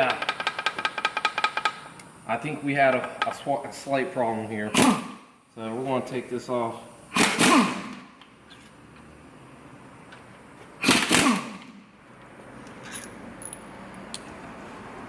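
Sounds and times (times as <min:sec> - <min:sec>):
metal engine parts clanking: 0:12.1 - 0:14.4.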